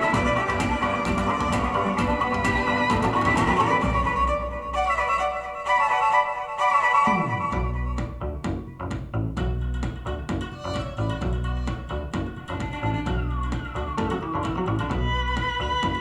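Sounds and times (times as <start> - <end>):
steady beat with strong bass: 0.0 - 4.6, 7.3 - 16.0
violin-led instrumental music: 0.0 - 8.7, 9.6 - 16.0
falling bass sweep: 7.1 - 16.0.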